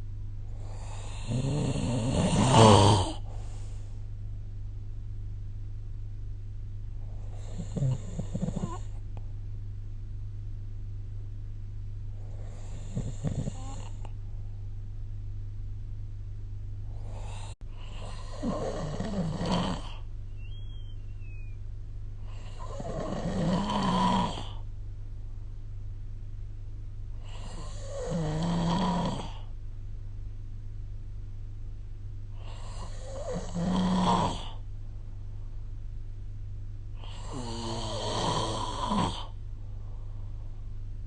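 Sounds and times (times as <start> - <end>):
person snoring: 0.5 - 3.3, 7.2 - 9.0, 12.2 - 14.1, 16.9 - 20.1, 22.2 - 24.6, 27.2 - 29.5, 32.4 - 34.6, 37.0 - 39.4.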